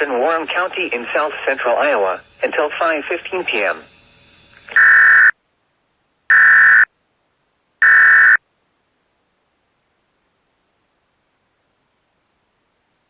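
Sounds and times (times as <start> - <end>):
buzzy emergency alert data tones: 2.2 - 5.3, 6.3 - 6.9, 7.8 - 8.4.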